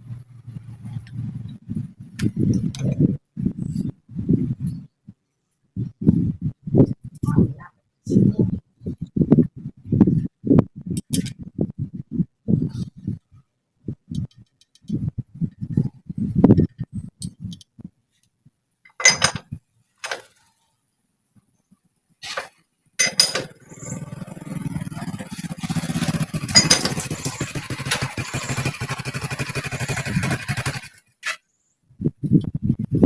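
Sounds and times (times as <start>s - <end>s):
metallic clicks and knocks: 18.9s - 20.4s, 22.4s - 23.6s, 26.1s - 28.6s
machine running with rapid pulsing: 23.5s - 31.1s.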